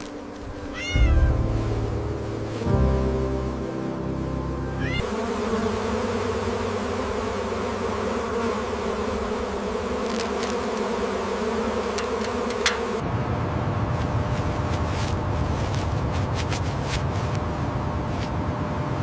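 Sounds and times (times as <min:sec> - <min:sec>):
bee swarm buzzing: 0:00.0 - 0:13.0.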